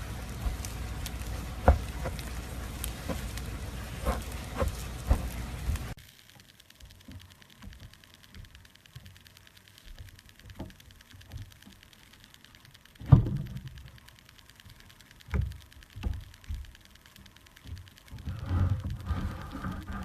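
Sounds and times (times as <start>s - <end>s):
slime squishing: 0.0s - 6.0s.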